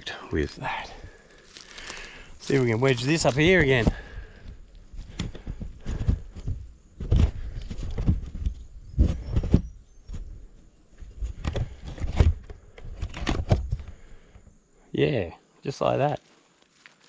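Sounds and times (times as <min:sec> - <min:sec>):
rubbing and scraping handling noise: 0:01.4 - 0:14.2
knocks and thumps on microphone: 0:05.0 - 0:10.3.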